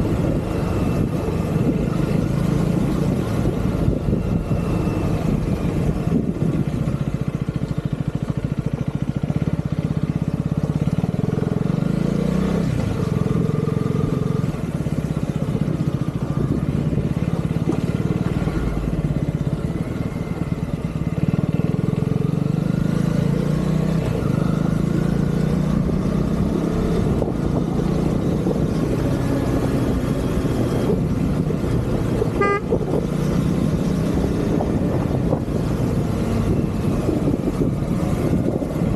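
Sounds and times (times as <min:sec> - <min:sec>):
motorcycle engine running: 0:00.0 - 0:38.9
horn beep: 0:32.3 - 0:32.9.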